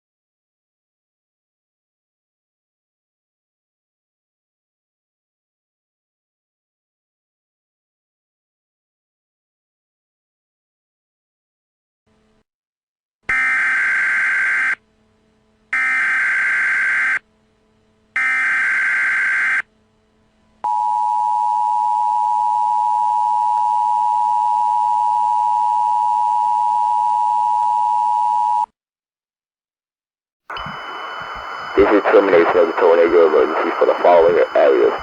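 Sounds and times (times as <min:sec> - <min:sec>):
data tone bursts: 0:30.5 - 0:35.0
two-tone attention signal: 0:30.5 - 0:35.0.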